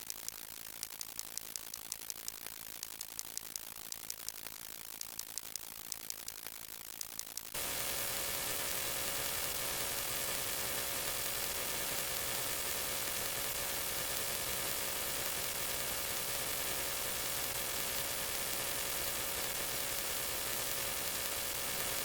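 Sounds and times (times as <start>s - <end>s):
ratchet-like clicks: 0.0s - 7.6s
static hiss: 0.0s - 22.0s
faint hum: 7.6s - 22.0s.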